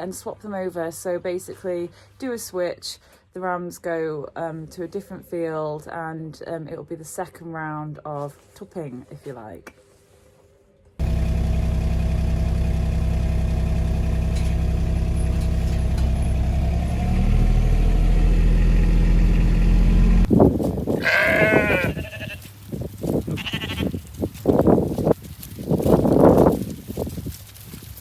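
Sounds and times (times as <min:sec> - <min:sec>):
engine running: 0:11.0 - 0:20.3
sheep bleating: 0:21.0 - 0:22.5, 0:23.3 - 0:24.0.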